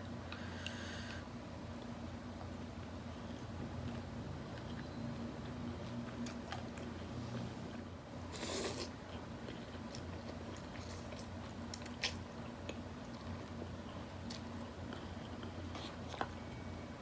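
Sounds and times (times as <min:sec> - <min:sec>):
person chewing: 0:08.3 - 0:16.4.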